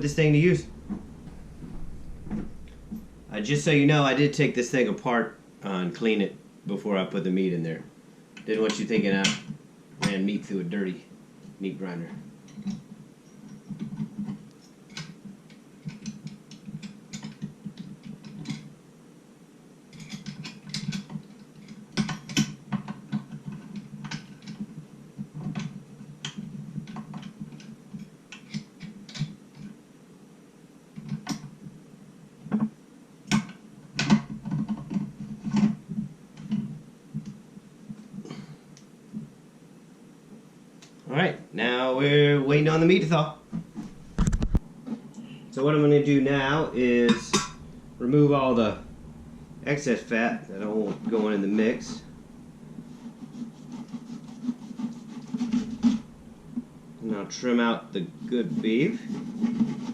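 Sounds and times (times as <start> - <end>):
steady low hum: 0.0 - 59.9
hard parts clattering: 46.1 - 50.4.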